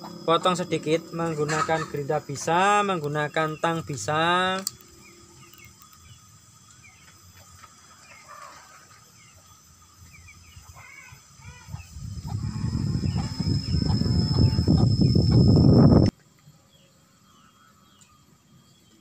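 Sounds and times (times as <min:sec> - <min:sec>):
small birds chirping: 0:00.0 - 0:16.1
chickens: 0:01.2 - 0:02.5.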